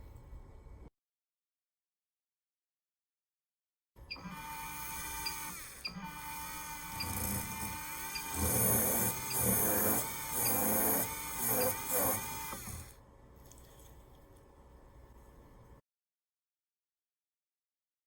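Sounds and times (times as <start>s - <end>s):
dental drill whining: 4.1s - 13.0s
drill grinding bursts: 4.1s - 13.0s.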